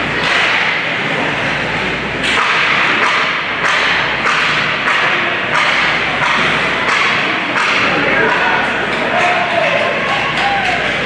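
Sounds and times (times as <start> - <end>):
low arena hum: 0.0 - 11.0
hockey sticks and puck knocking: 2.3 - 10.8.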